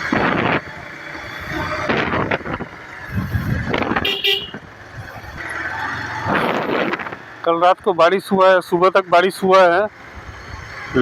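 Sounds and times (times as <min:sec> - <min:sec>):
road traffic: 0:00.0 - 0:11.0
vehicle horn honking: 0:04.0 - 0:04.6.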